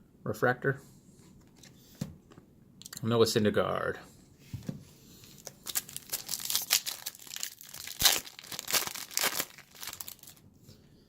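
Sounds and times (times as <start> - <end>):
foil wrapper tearing and crinkling: 5.3 - 10.4.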